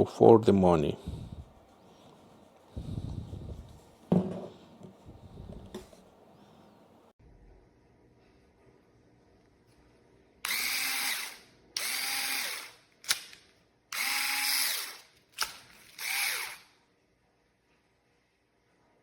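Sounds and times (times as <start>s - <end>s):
cordless screwdriver motor spinning: 10.5s - 12.8s, 14.0s - 16.7s.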